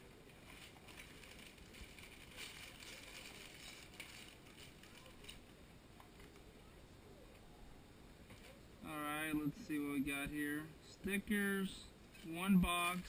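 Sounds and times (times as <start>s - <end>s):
cardboard and paper packaging rustling: 0.0s - 6.5s.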